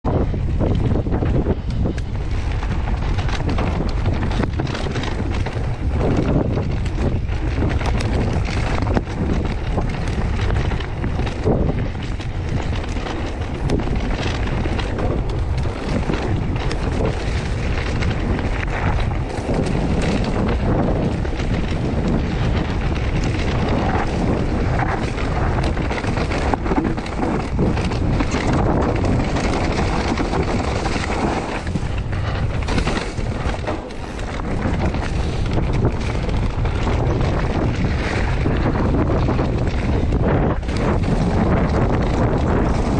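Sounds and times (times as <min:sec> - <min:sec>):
wind over microphone: 0:00.0 - 0:42.9
bike drive unit clattering: 0:00.1 - 0:42.9.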